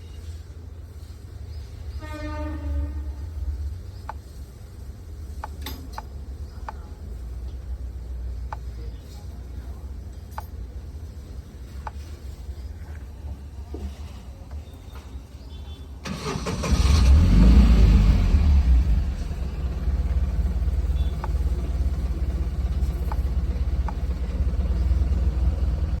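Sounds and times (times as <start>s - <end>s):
truck engine starting and idling: 16.0s - 26.0s.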